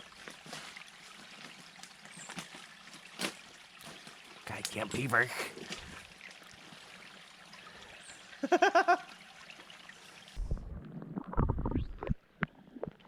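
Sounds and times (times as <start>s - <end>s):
running water hiss: 0.0s - 10.6s
low rumble: 10.4s - 12.2s.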